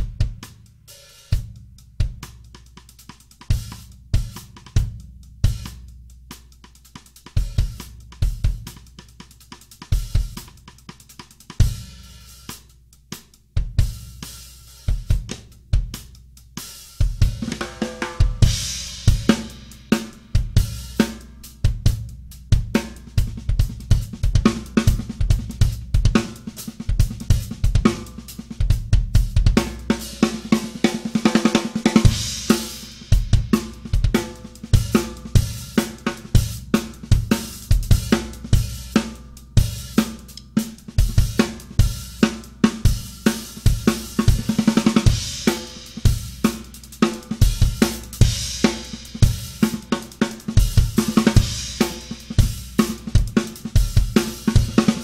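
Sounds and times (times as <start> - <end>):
hi-hat: 0.0 - 17.4, 18.3 - 55.0
bass drum: 0.0 - 55.0
snare drum: 16.9 - 21.9, 22.6 - 55.0.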